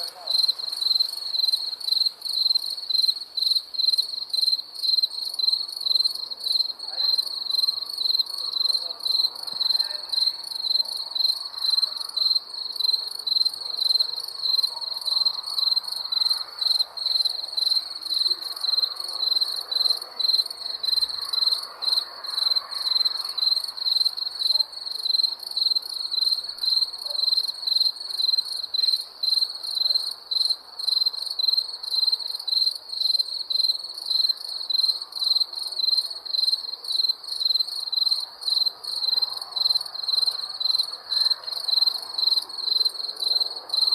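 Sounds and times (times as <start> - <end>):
crickets chirping: 0.0 - 43.9
faint background hiss: 0.0 - 43.9.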